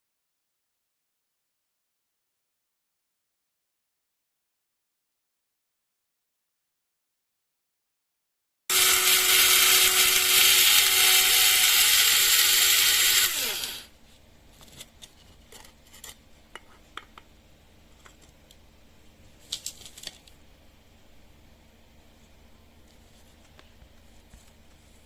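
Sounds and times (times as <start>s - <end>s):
coffee grinder motor running: 8.7s - 13.9s.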